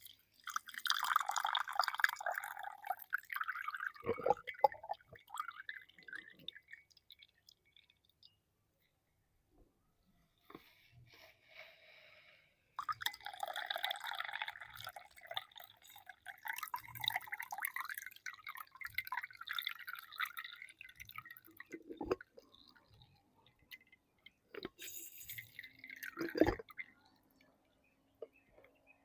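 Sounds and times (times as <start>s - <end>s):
juice trickling and dripping: 0.0s - 9.2s, 12.8s - 29.0s.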